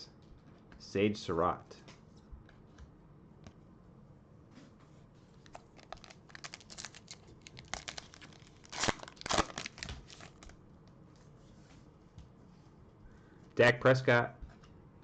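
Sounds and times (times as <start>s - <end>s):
crinkly wrapper crackling: 5.4s - 10.6s
wrapper ripping: 5.4s - 10.6s.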